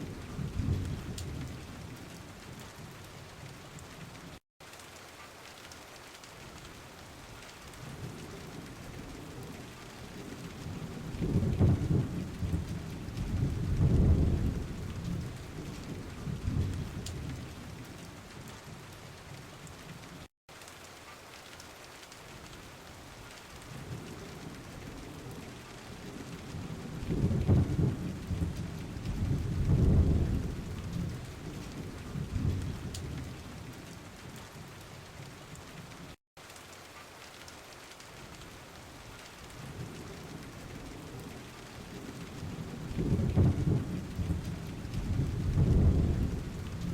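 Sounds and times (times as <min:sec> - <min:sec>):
heavy rain falling: 0:00.0 - 0:46.9
thunder rolling: 0:10.2 - 0:17.4, 0:26.2 - 0:33.3, 0:42.0 - 0:46.9.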